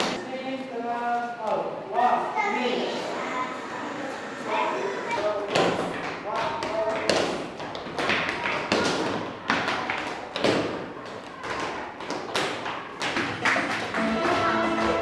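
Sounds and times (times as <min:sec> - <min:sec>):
pitched instrument notes: 0:13.9 - 0:15.0.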